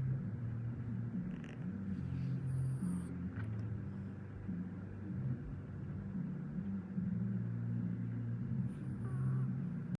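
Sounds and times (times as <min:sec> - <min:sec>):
puppy snoring: 0:01.2 - 0:03.2.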